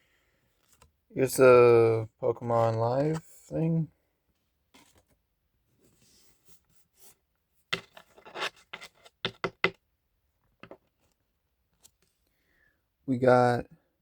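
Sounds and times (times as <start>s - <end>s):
cards scraping and flicking: 7.8s - 9.5s.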